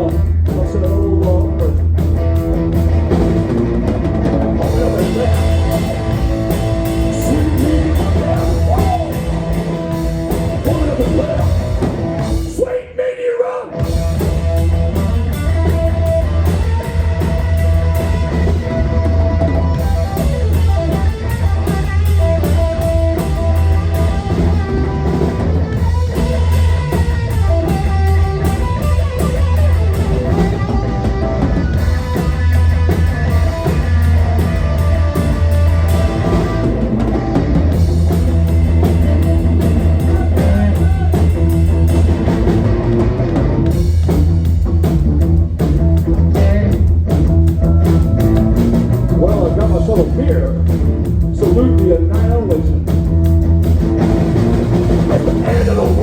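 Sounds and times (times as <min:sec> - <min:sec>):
live rock band playing: 0:00.0 - 0:12.6, 0:13.7 - 0:56.0.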